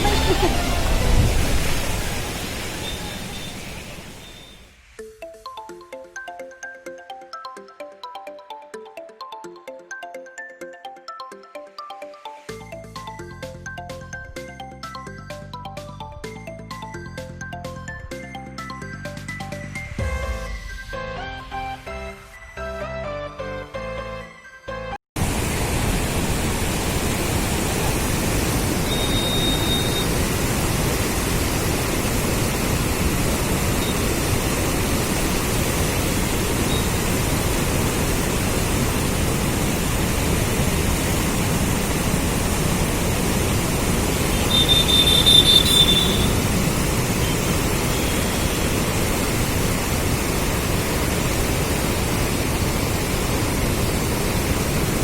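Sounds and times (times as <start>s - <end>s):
rushing floodwater: 0.0s - 4.4s, 25.2s - 55.0s.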